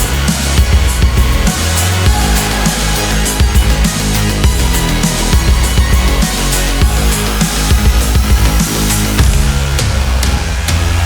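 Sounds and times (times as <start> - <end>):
crashing cymbals: 0.0 - 11.0
heavy driving music: 0.0 - 11.0
pounding bass hits: 0.0 - 11.0.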